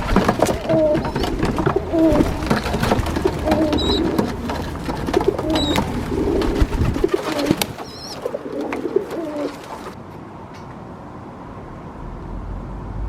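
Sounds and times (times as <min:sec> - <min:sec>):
pigeons cooing: 0:00.0 - 0:10.0.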